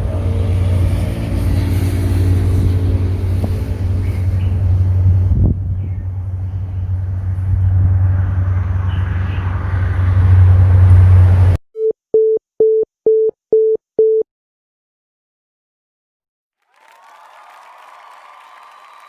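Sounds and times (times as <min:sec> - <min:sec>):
loud low engine rumble: 0:00.0 - 0:11.6.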